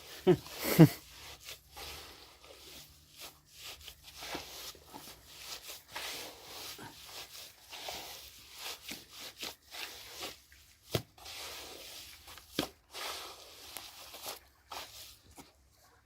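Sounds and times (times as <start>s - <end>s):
hands squelching wet clay: 0.0s - 16.0s.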